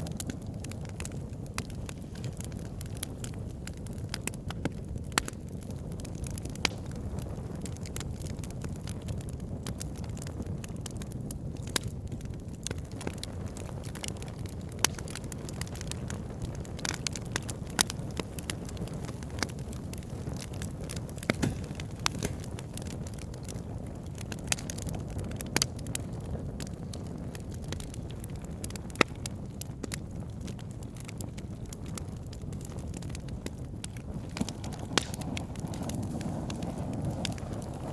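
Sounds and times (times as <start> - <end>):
campfire crackling and popping: 0.0 - 37.9
fire low rush: 14.6 - 24.7, 33.7 - 37.9.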